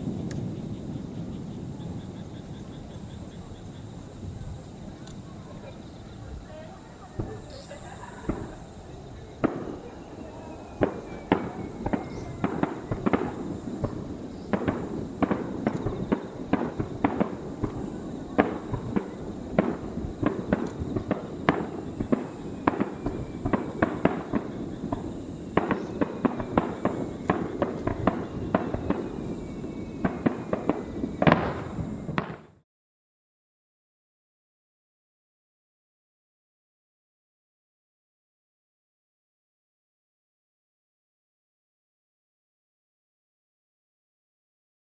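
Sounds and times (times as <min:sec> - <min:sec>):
firework bangs: 0:00.0 - 0:32.6.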